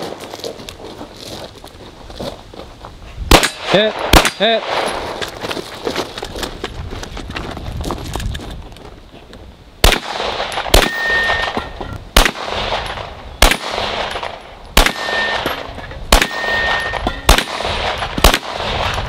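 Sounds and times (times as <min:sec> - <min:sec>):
gunshots with echo: 0:03.3 - 0:05.0, 0:09.8 - 0:11.6, 0:12.2 - 0:19.0
steel target ringing: 0:10.8 - 0:12.0, 0:14.8 - 0:17.4.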